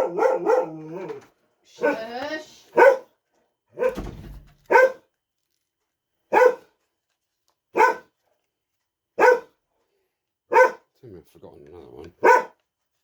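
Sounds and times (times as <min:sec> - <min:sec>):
dog barking: 0:00.0 - 0:01.2, 0:01.8 - 0:02.1, 0:02.7 - 0:05.1, 0:06.3 - 0:06.8, 0:07.7 - 0:08.2, 0:09.2 - 0:09.6, 0:10.5 - 0:10.9, 0:12.2 - 0:12.6.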